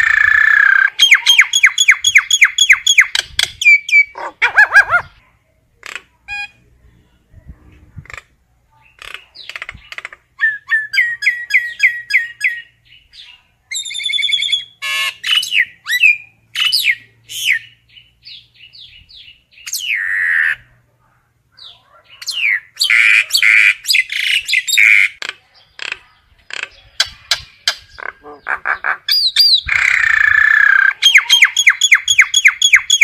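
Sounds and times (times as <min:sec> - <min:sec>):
myna calling: 0:00.0 - 0:05.2, 0:21.5 - 0:33.0.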